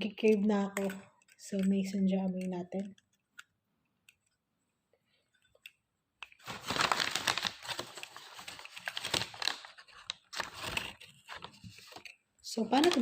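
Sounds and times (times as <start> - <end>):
plastic wrapping crinkling: 6.2 - 13.0.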